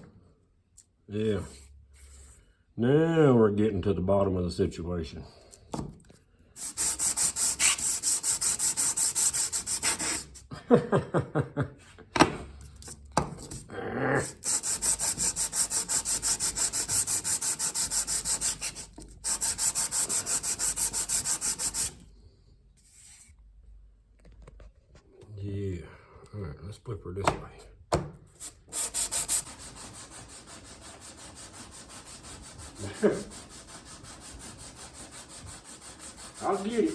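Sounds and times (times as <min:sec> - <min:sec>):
metal plate rubbed on sandpaper: 0:06.6 - 0:10.5, 0:14.3 - 0:22.0, 0:28.4 - 0:36.9.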